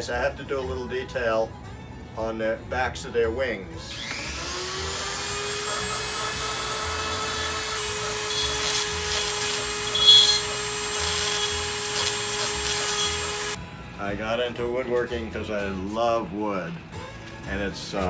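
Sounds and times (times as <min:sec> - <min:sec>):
rotary tool grinding wood: 0:03.8 - 0:13.6
rotary tool scraping: 0:03.8 - 0:13.6.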